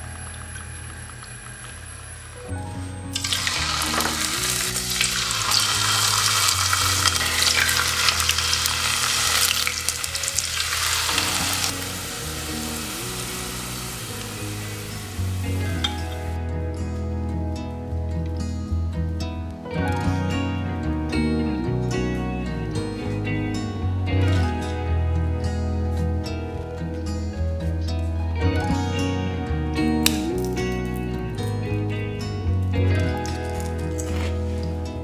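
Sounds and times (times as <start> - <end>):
soft background music: 0.0 - 35.0
potato slices frying in oil: 3.1 - 16.4.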